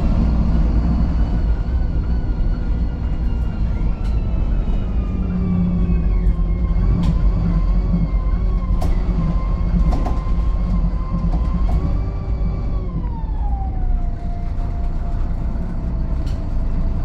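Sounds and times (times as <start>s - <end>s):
bus engine whine and rumble: 0.0s - 17.0s.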